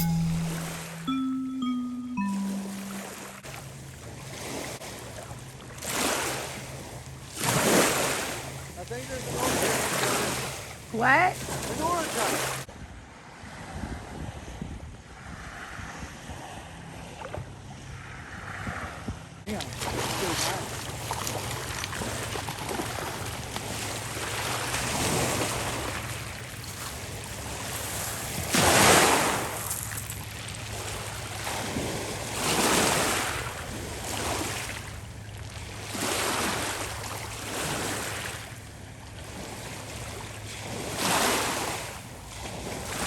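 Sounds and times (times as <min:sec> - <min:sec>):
wind and water hiss: 0:03.6 - 0:43.0
waves washing onto shore: 0:05.7 - 0:12.7, 0:19.5 - 0:43.0.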